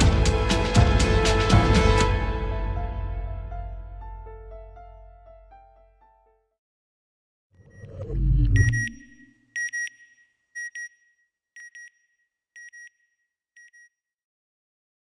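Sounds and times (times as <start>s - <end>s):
high electronic double beep: 7.6s - 10.1s
deep rumble: 7.7s - 9.2s.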